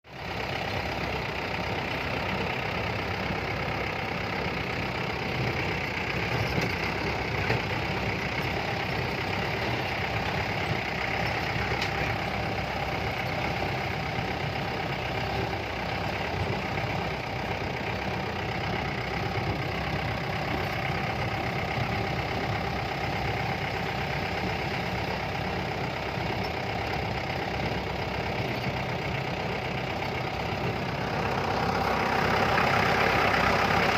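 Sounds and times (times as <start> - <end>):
jeep engine idling: 0.1 - 33.9.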